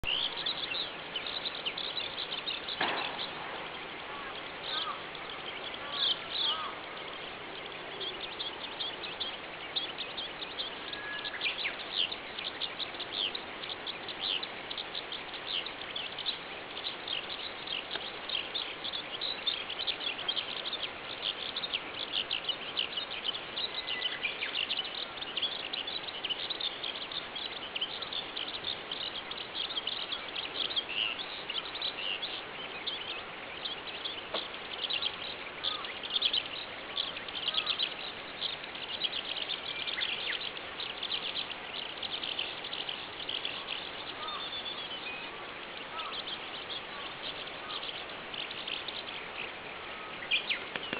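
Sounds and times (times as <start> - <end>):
skylark singing: 0.0 - 50.9.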